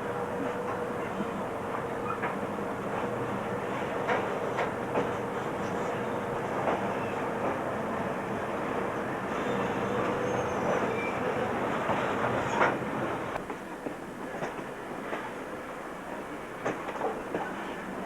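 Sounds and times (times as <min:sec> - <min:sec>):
train rumbling on rails: 0:00.0 - 0:18.0.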